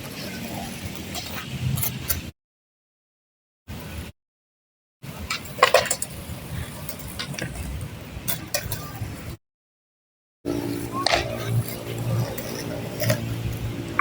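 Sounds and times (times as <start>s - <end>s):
skateboards rolling: 0.0s - 2.3s, 5.0s - 9.4s, 10.5s - 14.0s
skateboard clacks: 5.1s - 9.4s, 10.5s - 14.0s.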